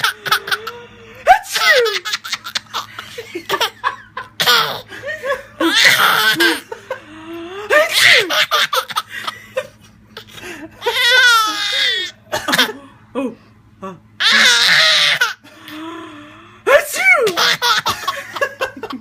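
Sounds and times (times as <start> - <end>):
baby laughing: 0.0 - 4.9, 5.6 - 6.8, 7.7 - 12.8, 14.2 - 15.4, 16.9 - 19.0.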